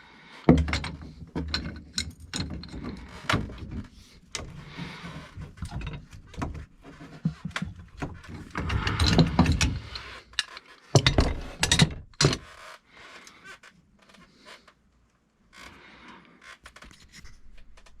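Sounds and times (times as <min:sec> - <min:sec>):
clicks and knocks of handling: 0:00.5 - 0:12.6.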